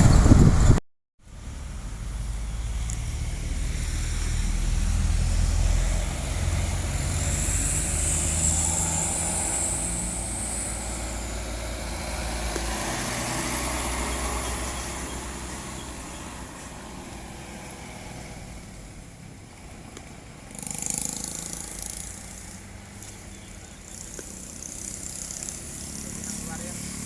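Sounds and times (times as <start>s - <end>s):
truck engine passing: 1.4s - 27.0s.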